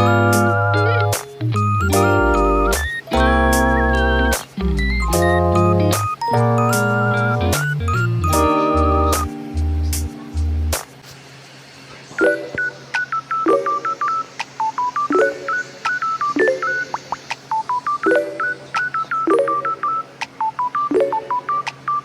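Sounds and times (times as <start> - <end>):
rapid electronic keypad beeps: 1.6 - 8.6, 12.2 - 22.0.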